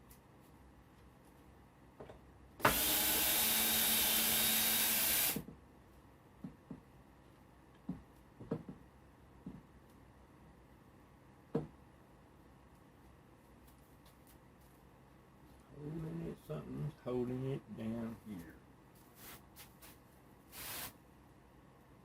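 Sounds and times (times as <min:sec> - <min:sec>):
power drill running: 0:02.6 - 0:05.4.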